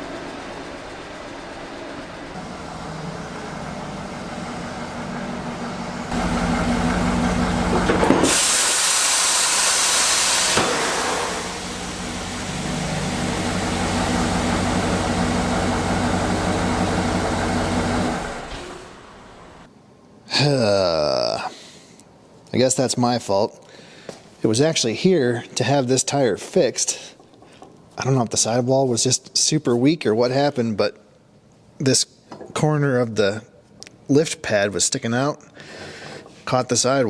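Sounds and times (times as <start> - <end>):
hydraulic pump motor running: 2.3 - 19.7
rush of escaping air: 8.2 - 14.6.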